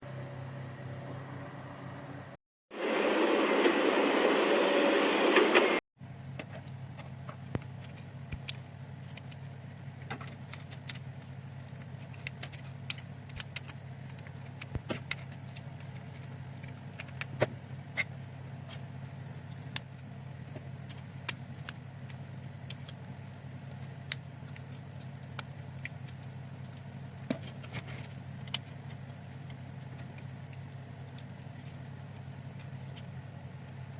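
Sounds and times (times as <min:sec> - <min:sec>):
steady low hum: 0:00.0 - 0:33.9
loud burst of noise: 0:02.7 - 0:05.8
plastic parts clicking and tapping: 0:10.0 - 0:18.1.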